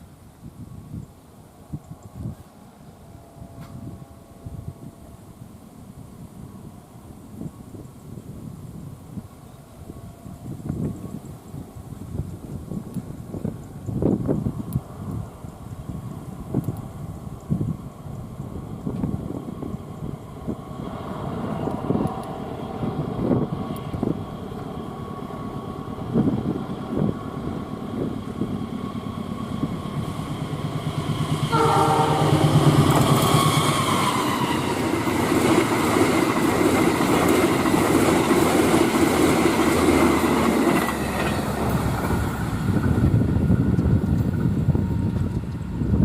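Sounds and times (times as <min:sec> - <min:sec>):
train horn: 0:31.4 - 0:34.8
train wheels clattering on rails: 0:32.2 - 0:45.8.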